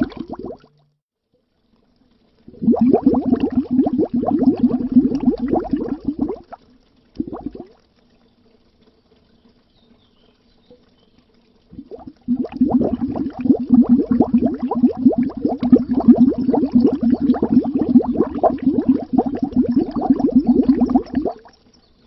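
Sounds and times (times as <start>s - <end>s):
bubbles rising under water: 0.0s - 0.8s, 2.5s - 6.6s, 7.2s - 7.8s, 11.7s - 21.6s.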